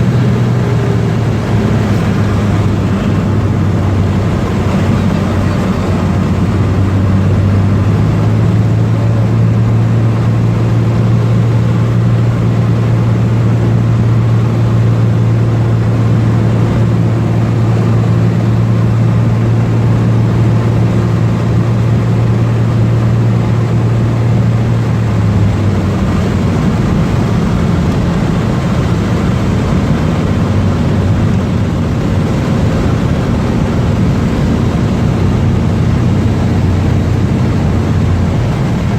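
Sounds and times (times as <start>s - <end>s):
propeller plane engine droning: 0.0s - 38.9s.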